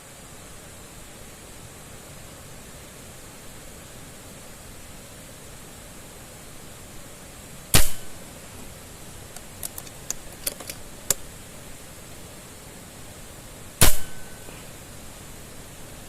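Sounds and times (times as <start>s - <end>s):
gunshots: 7.8s - 8.2s, 13.8s - 14.2s
small clicks: 9.3s - 11.2s.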